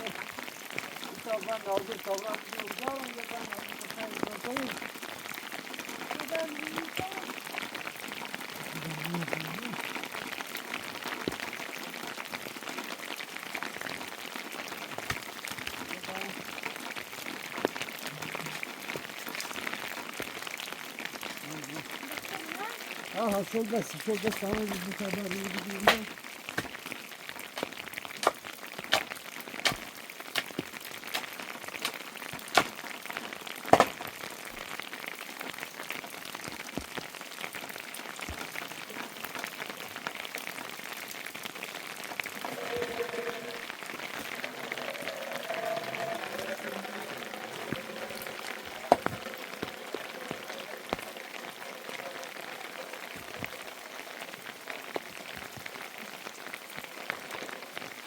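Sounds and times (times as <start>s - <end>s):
steady rain: 0.0s - 58.0s
sharp drips striking a surface: 25.8s - 32.8s, 33.7s - 34.1s.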